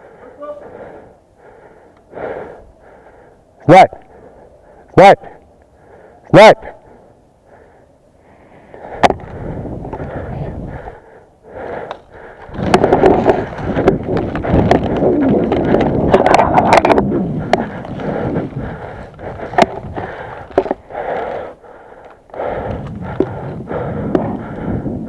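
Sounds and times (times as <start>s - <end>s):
footsteps on rough ground: 11.9s - 24.6s.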